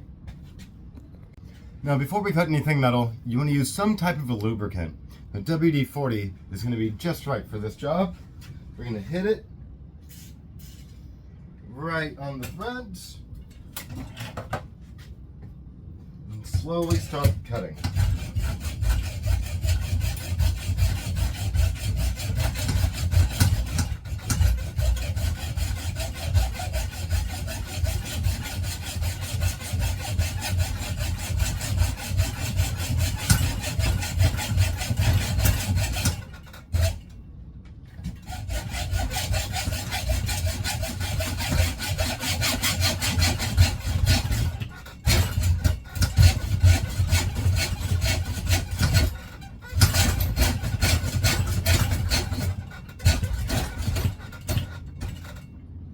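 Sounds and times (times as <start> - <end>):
hand saw cutting metal: 16.4 - 37.1, 38.0 - 55.5.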